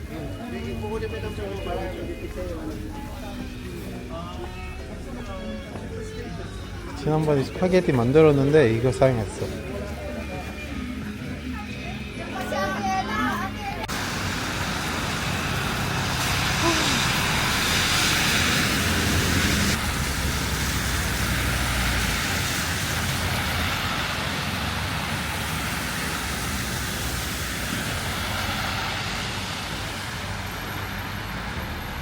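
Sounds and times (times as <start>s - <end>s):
passing vehicles: 0.0s - 32.0s
vehicle passing close: 13.9s - 32.0s.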